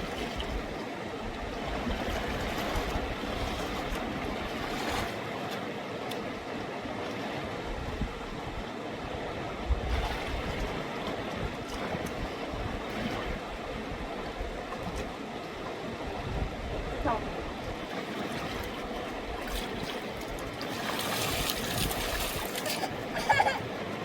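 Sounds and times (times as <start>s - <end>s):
fast mountain river rushing: 16.6s - 24.0s.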